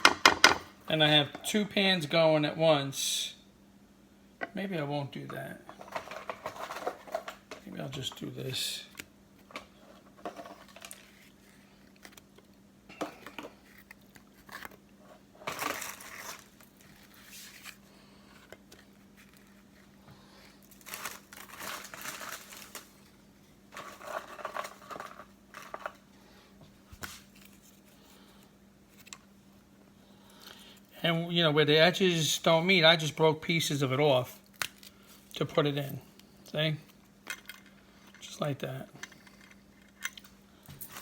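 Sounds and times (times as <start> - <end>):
faint steady hum: 0.0 - 41.0
crackers crinkling and cracking: 5.7 - 26.1, 34.3 - 38.0.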